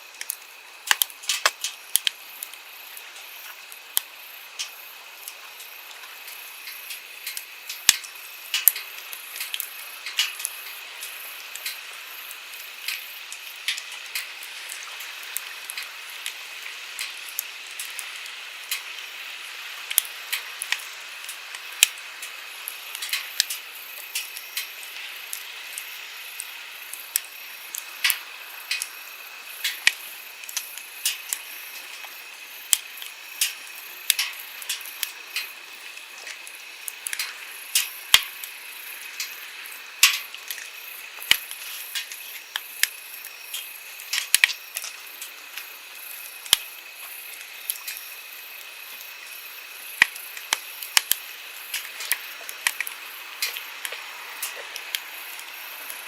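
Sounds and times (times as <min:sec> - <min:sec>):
campfire crackling and popping: 0:00.0 - 0:56.0
flowing stream: 0:51.3 - 0:56.0.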